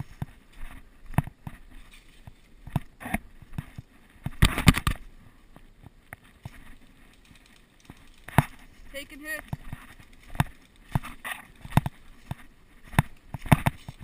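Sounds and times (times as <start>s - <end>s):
crackling impacts: 0.0s - 14.0s.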